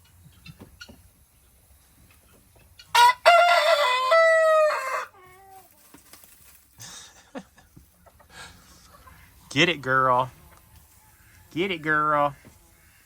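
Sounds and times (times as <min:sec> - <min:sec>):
rooster crowing: 0:02.9 - 0:05.2.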